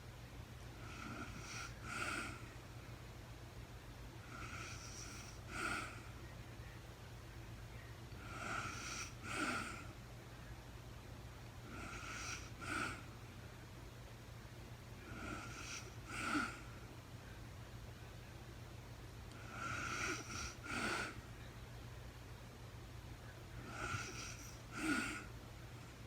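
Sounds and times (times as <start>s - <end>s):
steady low hum: 0.0s - 26.0s
woman snoring: 0.8s - 2.4s, 4.2s - 6.2s, 8.2s - 10.0s, 11.6s - 13.1s, 15.0s - 16.7s, 19.4s - 21.2s, 23.6s - 25.3s.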